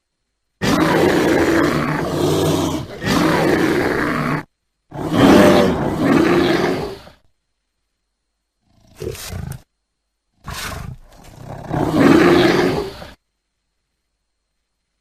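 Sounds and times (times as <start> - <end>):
bear growling: 0.6 - 7.2, 8.6 - 9.7, 10.4 - 13.2.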